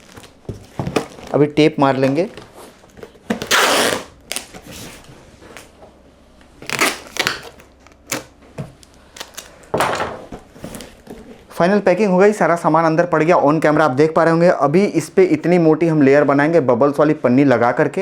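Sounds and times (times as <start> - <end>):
packing tape ripping: 3.3 - 5.0, 6.6 - 8.3, 9.1 - 9.7.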